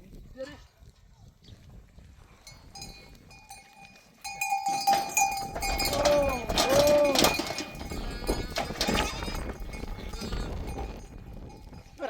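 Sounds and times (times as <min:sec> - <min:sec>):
animal bells ringing: 0:02.4 - 0:12.0.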